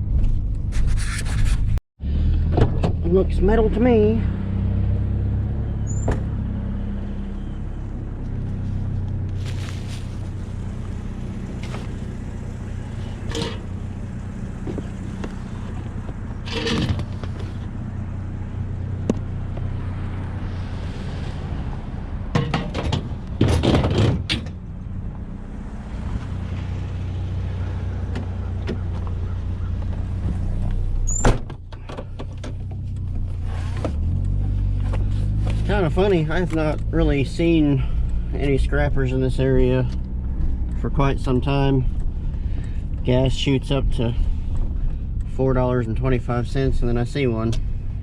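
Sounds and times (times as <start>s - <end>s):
road noise: 0.0s - 48.0s
clunks and rattles: 2.3s - 3.0s, 10.6s - 17.8s, 22.2s - 24.8s, 27.4s - 35.7s, 44.1s - 45.3s
pickup engine running: 2.3s - 48.0s.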